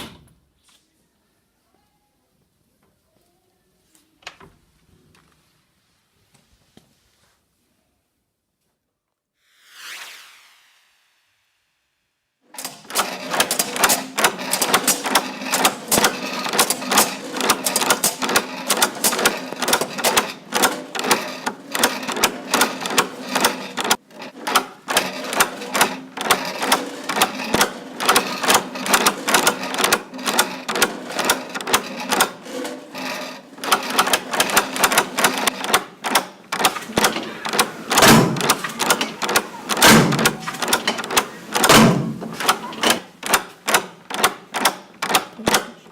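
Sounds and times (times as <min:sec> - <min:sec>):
dense clicking and clattering: 0:12.6 - 0:45.8.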